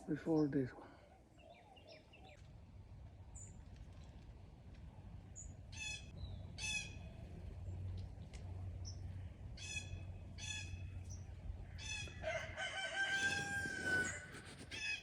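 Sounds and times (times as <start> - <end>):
rooster crowing: 11.8 - 15.0.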